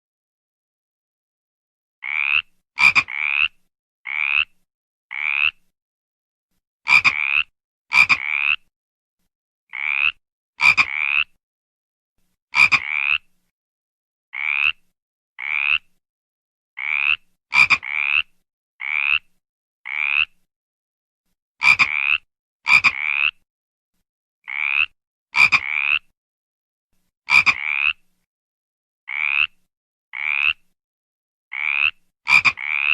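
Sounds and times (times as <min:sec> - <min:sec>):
frog croaking: 0:02.0 - 0:05.6, 0:06.9 - 0:08.7, 0:09.7 - 0:11.4, 0:12.6 - 0:13.3, 0:14.4 - 0:14.8, 0:15.4 - 0:15.9, 0:16.8 - 0:19.3, 0:19.9 - 0:20.4, 0:21.6 - 0:23.4, 0:24.4 - 0:26.1, 0:27.3 - 0:28.0, 0:29.1 - 0:29.6, 0:30.2 - 0:30.6, 0:31.5 - 0:32.9.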